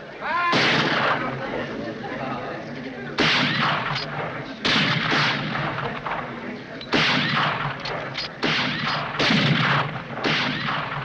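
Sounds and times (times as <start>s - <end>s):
rifle shots: 0.5s - 1.4s, 3.2s - 11.0s.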